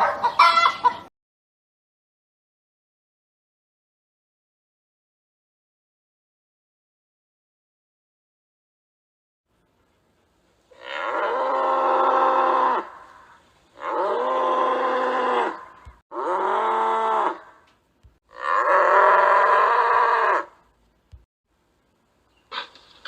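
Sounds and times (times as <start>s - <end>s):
cow mooing: 10.7s - 13.1s, 13.8s - 17.6s, 18.3s - 20.5s.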